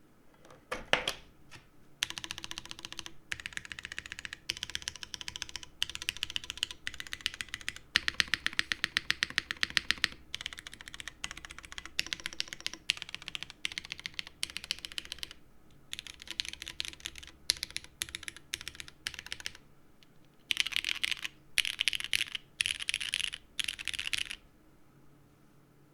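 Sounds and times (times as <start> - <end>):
mechanical keyboard typing: 2.0 - 19.6, 20.4 - 24.4.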